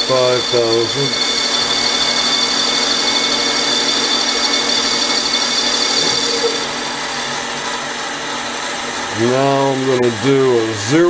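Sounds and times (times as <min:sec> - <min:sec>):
lathe machine whine: 0:00.0 - 0:11.0.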